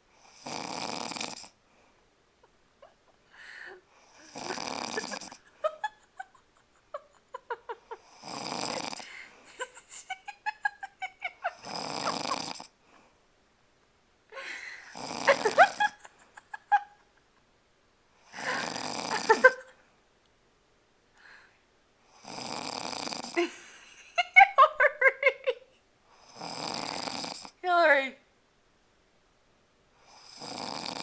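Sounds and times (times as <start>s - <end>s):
woman snoring: 0.2s - 1.6s, 3.3s - 12.8s, 14.4s - 16.9s, 18.3s - 19.7s, 22.2s - 24.3s, 26.2s - 27.7s, 30.1s - 31.0s.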